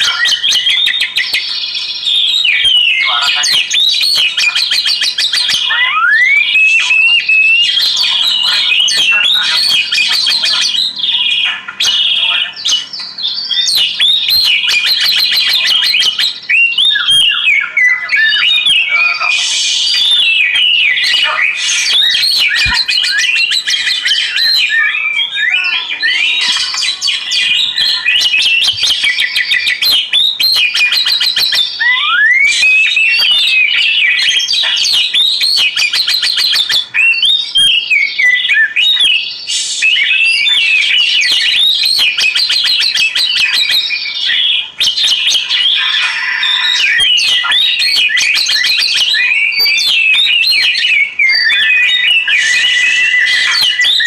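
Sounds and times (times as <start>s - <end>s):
bird singing whistles and trills: 0.0s - 54.0s.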